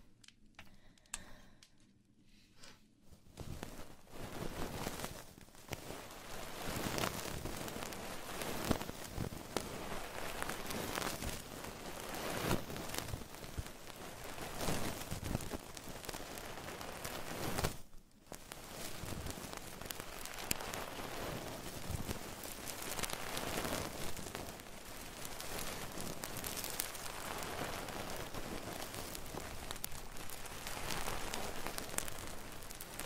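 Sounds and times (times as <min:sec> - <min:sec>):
crackling and rustling on microphone: 0:02.5 - 0:33.0.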